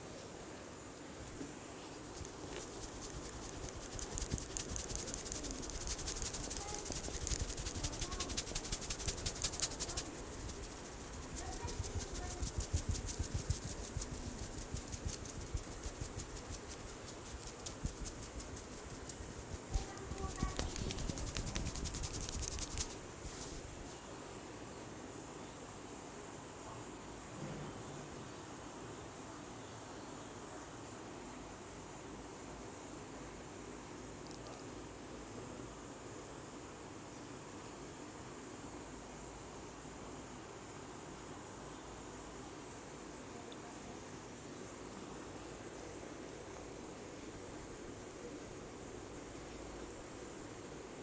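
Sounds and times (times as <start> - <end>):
hands tapping on head: 2.1 - 23.0.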